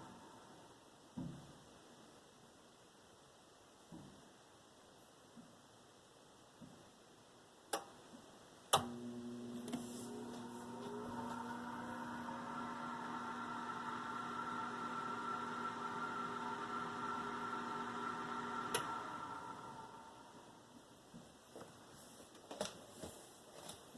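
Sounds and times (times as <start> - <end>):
oven fan humming: 8.8 - 20.7.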